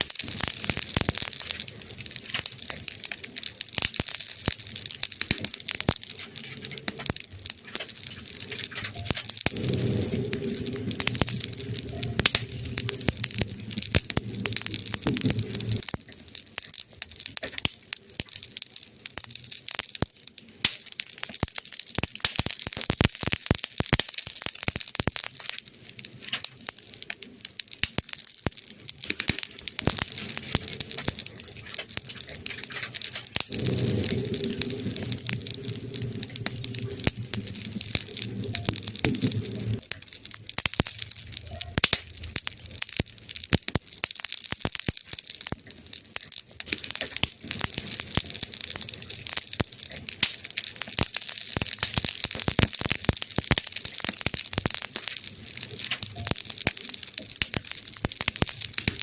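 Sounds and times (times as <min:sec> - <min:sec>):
fire hiss: 0:00.0 - 0:59.0
wood crackling and popping: 0:00.0 - 0:59.0
low hum: 0:09.0 - 0:15.8, 0:32.7 - 0:39.9.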